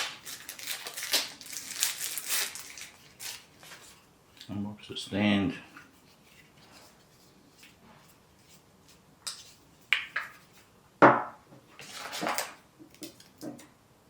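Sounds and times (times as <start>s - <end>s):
packaging rustling: 0.0s - 4.0s.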